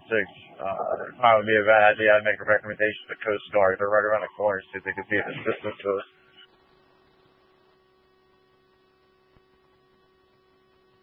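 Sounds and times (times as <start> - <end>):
faint electrical hum: 0.0 - 11.0.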